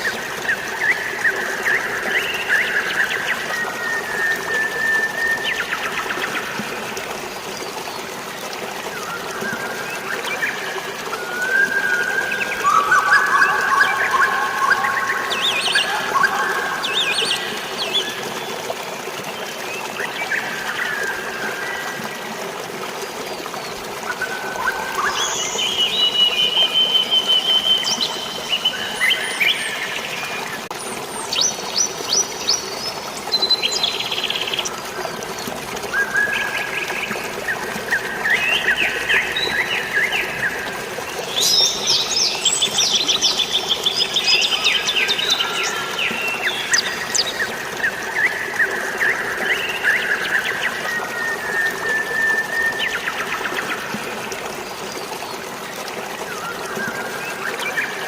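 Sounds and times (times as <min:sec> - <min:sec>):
flowing water: 0:00.0 - 0:58.0
birds chirping and trilling: 0:08.9 - 0:18.6, 0:35.9 - 0:53.7.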